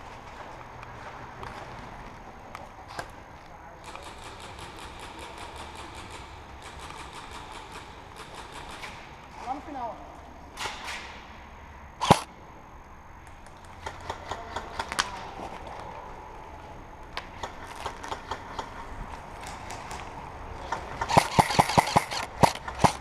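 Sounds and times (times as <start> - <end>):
airsoft guns firing: 3.8 - 9.0, 12.0 - 12.3, 20.7 - 23.0.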